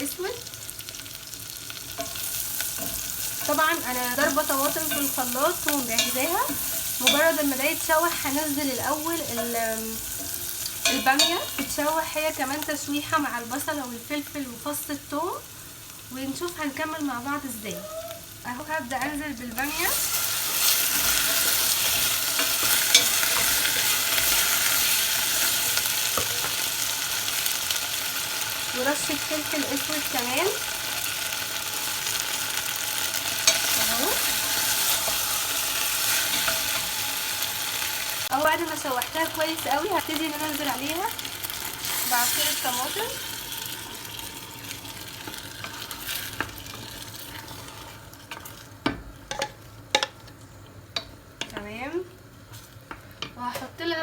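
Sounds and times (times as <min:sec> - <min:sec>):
okra sizzling in a pan: 0:00.0 - 0:54.0
spoon stirring in pot: 0:01.8 - 0:12.1, 0:19.1 - 0:26.8, 0:33.3 - 0:37.1, 0:43.4 - 0:51.7
spoon knocking against pot: 0:48.8 - 0:50.2.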